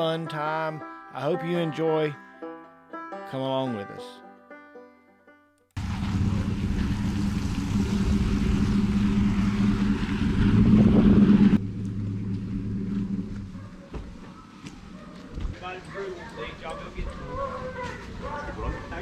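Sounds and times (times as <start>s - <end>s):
vehicle engine running: 5.8s - 13.8s.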